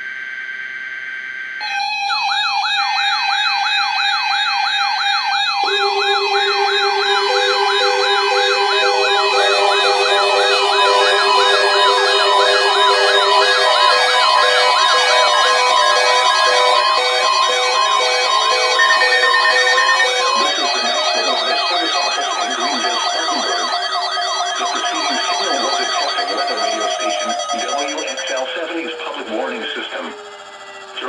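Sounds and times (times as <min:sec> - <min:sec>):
fast-sweeping electronic siren: 0:01.6 - 0:31.0
pulsing beeps: 0:04.4 - 0:31.0
steady alert tone: 0:05.6 - 0:30.3
lower steady tone: 0:05.6 - 0:31.0.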